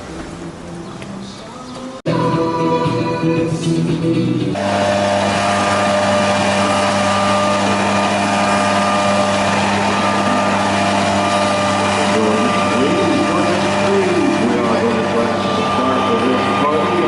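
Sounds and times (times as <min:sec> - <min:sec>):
low mechanical hum: 0:04.5 - 0:17.0.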